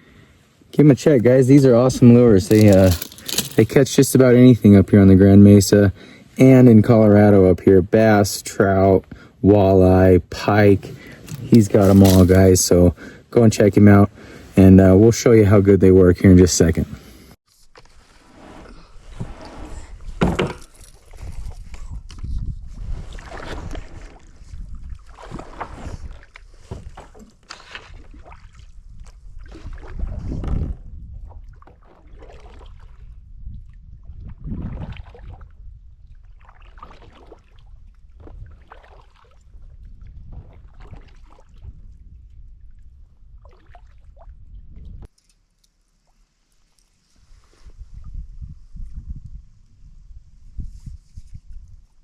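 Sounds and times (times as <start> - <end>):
paddle strokes splashing water: 22.8 - 30.5, 31.2 - 33.2, 34.6 - 35.5, 36.2 - 41.7, 43.4 - 44.3.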